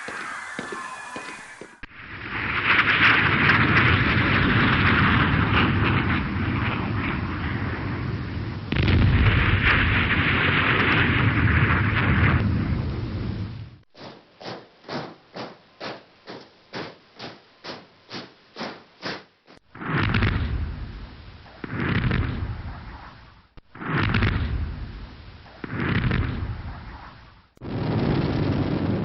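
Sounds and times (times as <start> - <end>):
explosion blast roar: 0.0 - 13.8, 27.6 - 29.0.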